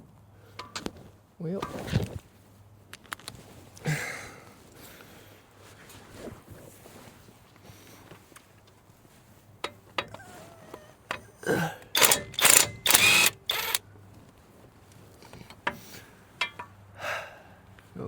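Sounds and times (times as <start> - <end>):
metal tools clinking: 0.6 - 1.0, 11.9 - 13.8, 15.3 - 16.7
metallic rattles and scrapes: 0.6 - 2.2, 15.2 - 16.7.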